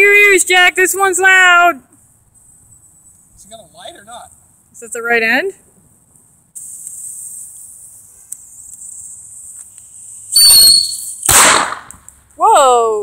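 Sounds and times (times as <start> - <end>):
firework high-pitched whistle: 6.6 - 11.7
firework bang: 10.3 - 12.0.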